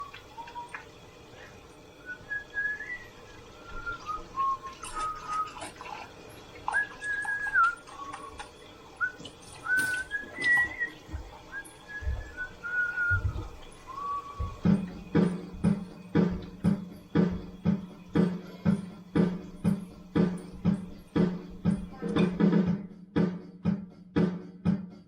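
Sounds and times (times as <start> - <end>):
thin whistling tone: 0.0 - 17.1
sharp clinks: 9.4 - 10.2.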